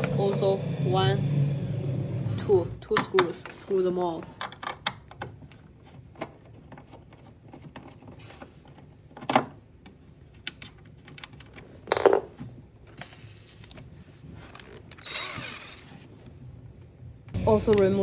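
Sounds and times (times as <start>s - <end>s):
screws and tools clicking: 15.0s - 15.9s.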